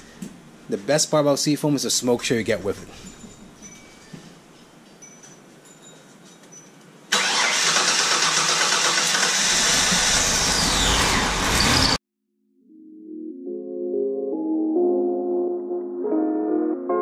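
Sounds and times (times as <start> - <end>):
starter cranking engine: 7.1 - 11.8.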